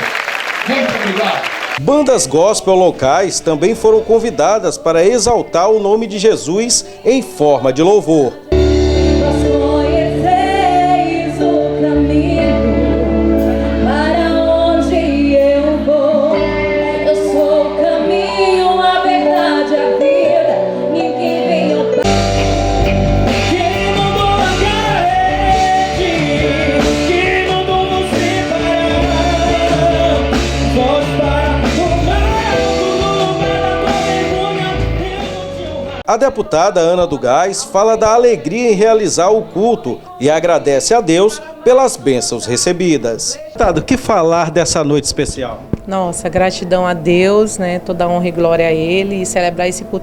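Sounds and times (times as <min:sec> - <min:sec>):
gospel band music: 0:00.0 - 0:50.0
person singing: 0:08.3 - 0:37.2.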